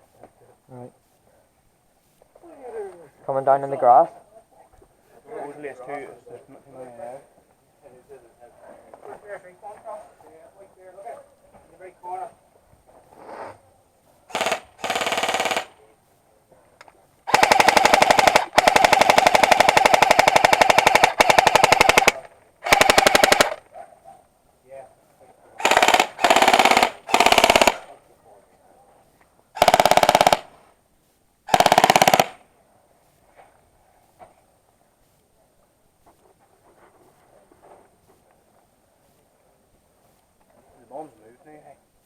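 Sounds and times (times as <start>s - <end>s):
airsoft rifle automatic fire: 14.3s - 15.8s, 17.3s - 23.6s, 25.6s - 28.0s, 29.6s - 30.5s, 31.5s - 32.4s.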